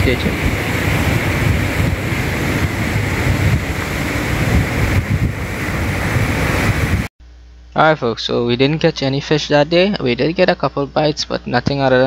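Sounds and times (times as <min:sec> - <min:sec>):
surf washing on shore: 0:00.0 - 0:07.1
wind buffeting microphone: 0:00.0 - 0:07.1.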